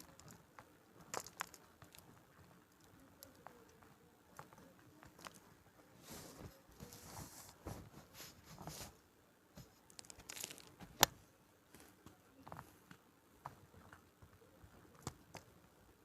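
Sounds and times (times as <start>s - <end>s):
chalk crunching and crackling: 0.0s - 9.0s, 9.6s - 11.1s.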